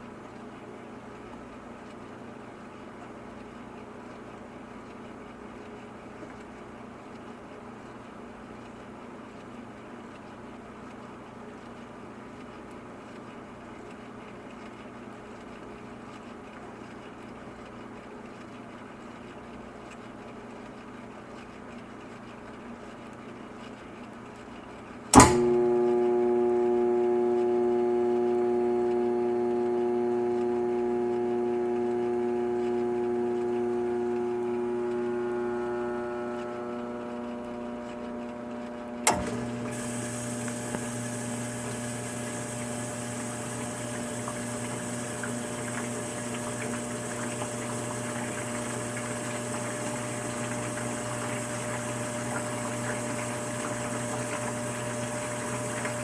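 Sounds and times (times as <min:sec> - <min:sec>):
dishwasher pump click: 0:25.1 - 0:25.6, 0:39.0 - 0:56.0
dishwasher pump humming: 0:25.1 - 0:56.0.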